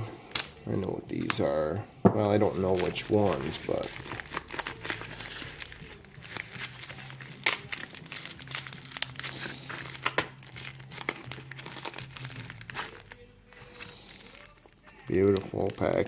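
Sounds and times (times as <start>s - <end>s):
packaging tearing: 0.2s - 0.6s, 2.4s - 16.0s
packaging crinkling and rustling: 2.4s - 16.0s.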